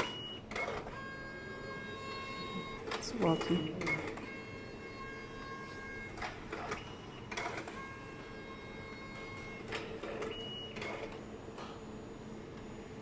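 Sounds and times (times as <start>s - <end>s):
printer motor whine: 0.0s - 13.0s
mechanical clicks and clunks: 5.9s - 7.8s.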